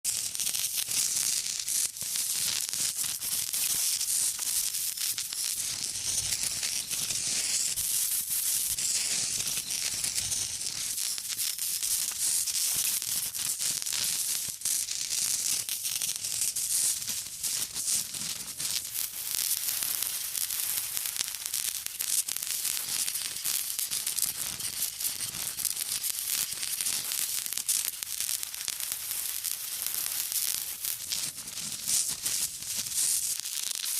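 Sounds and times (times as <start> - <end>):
acid fizzing and sizzling: 18.8 - 33.9.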